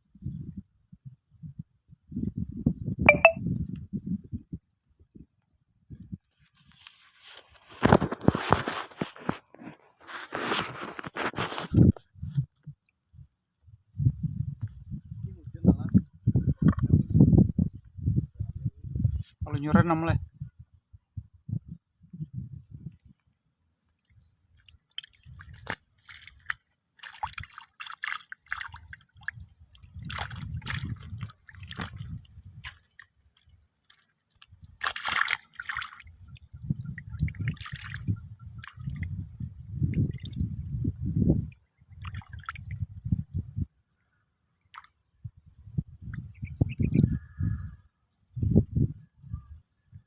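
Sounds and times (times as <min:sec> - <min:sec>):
water dripping: 0:23.9 - 0:39.3, 0:39.9 - 0:40.7, 0:41.4 - 0:42.8, 0:44.7 - 0:45.0
water sloshing and splashing: 0:24.0 - 0:39.2, 0:39.9 - 0:40.4, 0:42.0 - 0:42.8.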